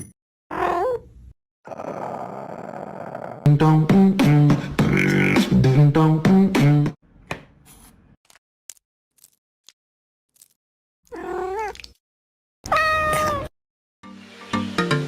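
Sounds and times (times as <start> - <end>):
cat meowing: 11.1 - 11.8, 12.6 - 13.5.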